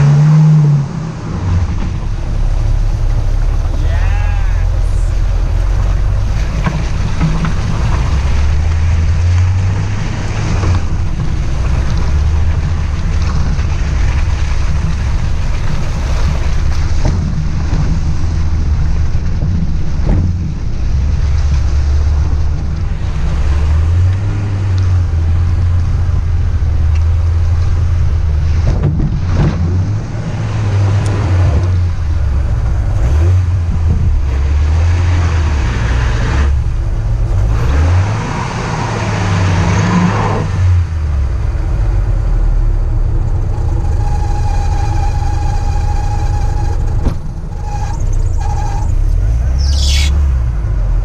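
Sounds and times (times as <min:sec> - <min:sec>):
car engine revving: 0:00.0 - 0:51.0
tyre and wind noise: 0:00.0 - 0:51.0.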